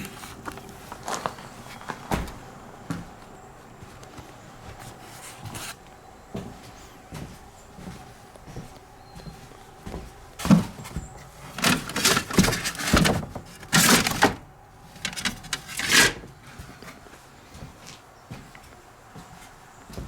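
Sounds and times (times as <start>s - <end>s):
audio gear being moved around: 10.5s - 16.3s.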